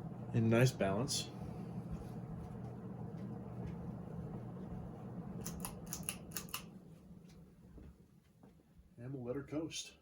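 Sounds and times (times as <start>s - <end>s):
ceiling fan motor humming: 0.0s - 10.0s
sharp clicks: 5.4s - 6.7s.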